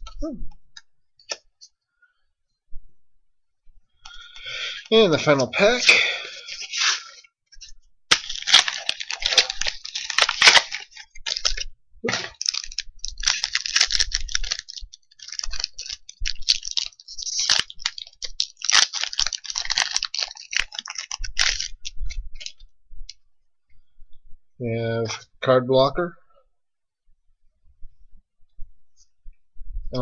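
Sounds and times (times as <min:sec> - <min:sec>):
foil wrapper crinkling: 0:06.0 - 0:07.2, 0:08.1 - 0:22.6.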